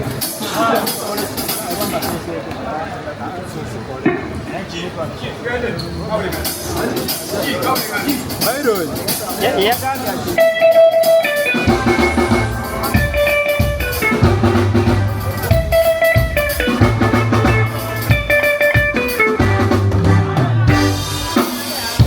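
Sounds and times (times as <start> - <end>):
drum kit: 0.0 - 2.2, 6.3 - 22.0
guitar chords: 9.6 - 22.0
bass line: 11.7 - 21.4.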